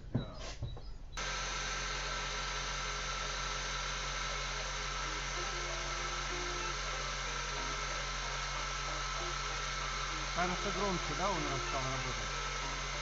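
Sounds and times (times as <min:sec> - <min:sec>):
steady high tones: 0:05.3 - 0:13.0.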